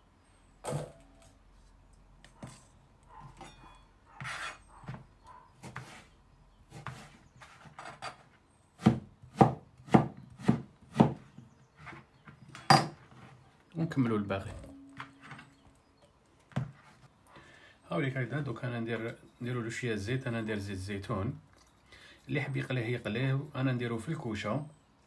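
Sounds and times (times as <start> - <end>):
knife chopping vegetable: 5.6 - 6.0, 8.8 - 11.4.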